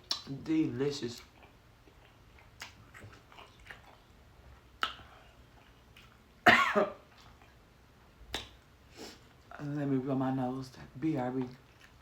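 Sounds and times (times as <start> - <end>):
person coughing: 6.5 - 7.0.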